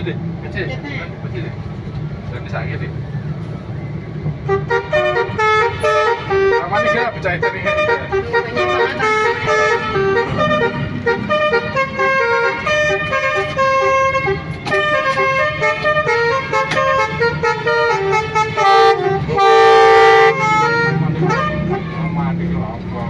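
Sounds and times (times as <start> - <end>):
multi-tone bus horn melody: 4.2 - 22.4.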